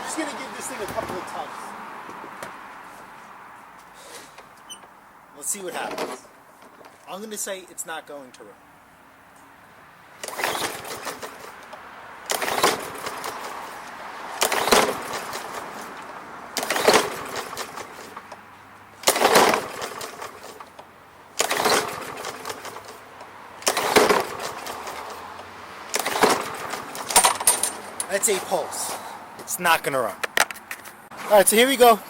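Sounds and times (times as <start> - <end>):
recoil cord pulls: 10.2 - 13.6, 14.4 - 18.4, 19.0 - 28.1
lawn mower engine cranking: 10.2 - 28.5.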